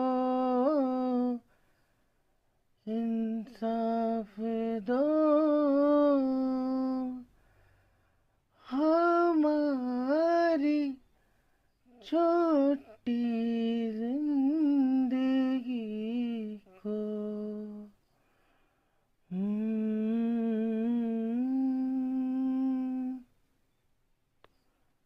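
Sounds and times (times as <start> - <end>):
person humming a melody: 0.0 - 1.4, 2.8 - 7.3, 11.9 - 18.0, 19.3 - 23.3.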